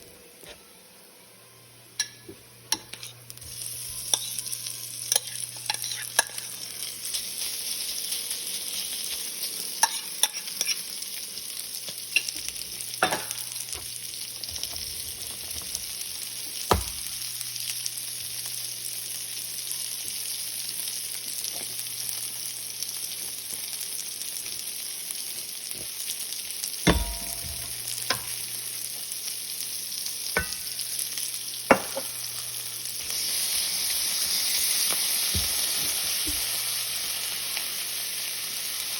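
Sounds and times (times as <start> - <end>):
food sizzling in a frying pan: 0.0 - 38.9
utensil knocking against pan: 26.9 - 28.3.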